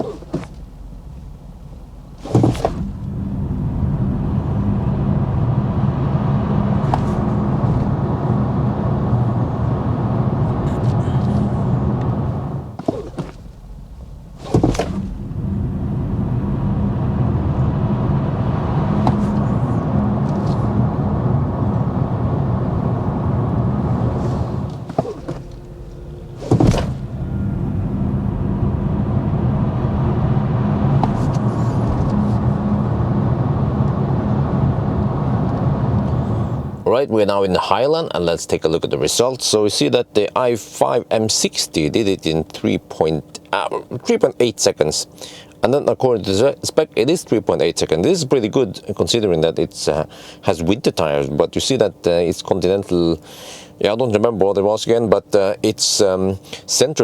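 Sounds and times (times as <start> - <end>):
road and tyre noise: 0.0 - 36.9
low cabin hum: 0.0 - 57.0.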